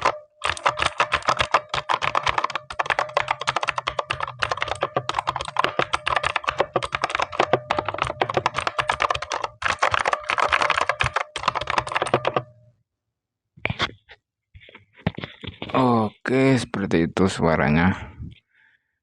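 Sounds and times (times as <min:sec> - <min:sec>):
mechanical keyboard typing clicks: 0:00.0 - 0:12.5.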